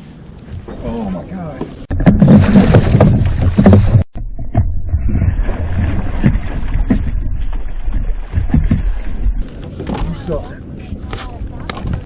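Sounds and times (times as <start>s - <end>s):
boat running on water: 5.5s - 12.0s.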